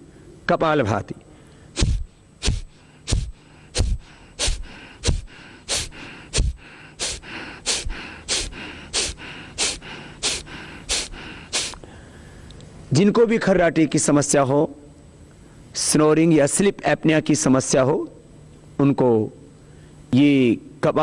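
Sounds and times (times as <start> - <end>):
forceful exhalations through nose: 1.7 - 12.5.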